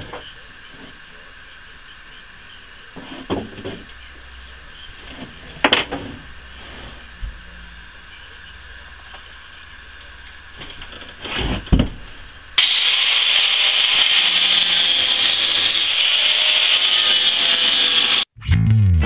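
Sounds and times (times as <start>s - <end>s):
cutting wheel cutting metal: 12.6s - 18.3s.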